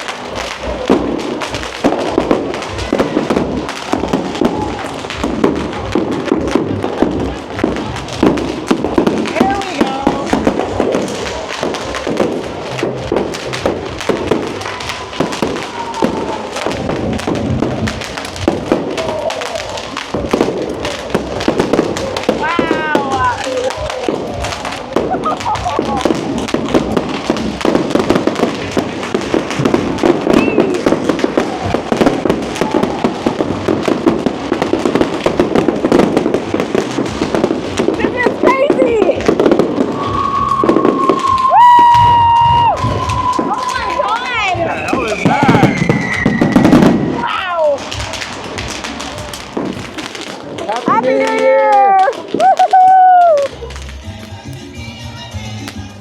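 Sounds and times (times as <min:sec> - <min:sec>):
music: 0:00.0 - 0:35.6, 0:53.2 - 0:56.0
fireworks and firecrackers banging: 0:00.0 - 0:56.0.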